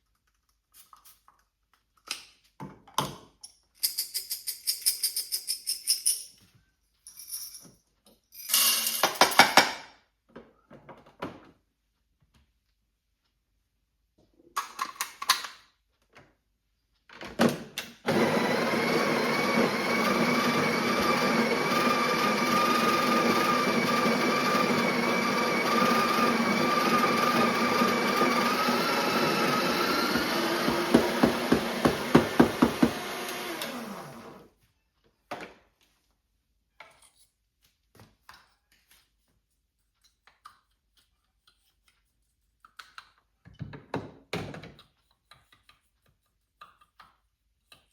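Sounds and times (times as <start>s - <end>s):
electric coffee grinder: 18.1s - 34.5s.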